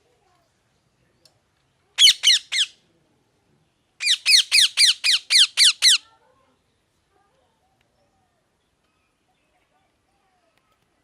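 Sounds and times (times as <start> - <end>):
parrot squawking: 2.0 - 2.7, 4.0 - 6.0.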